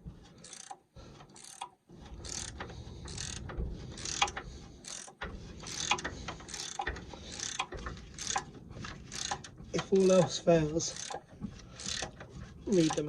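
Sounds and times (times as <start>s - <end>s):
socket ratchet clicking: 0.4s - 8.5s, 9.1s - 9.9s, 10.9s - 12.2s.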